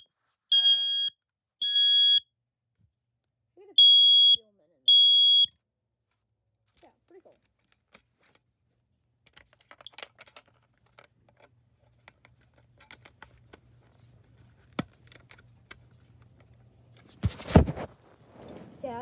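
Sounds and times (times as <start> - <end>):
plastic parts clicking and tapping: 6.7 - 8.5, 9.2 - 17.1.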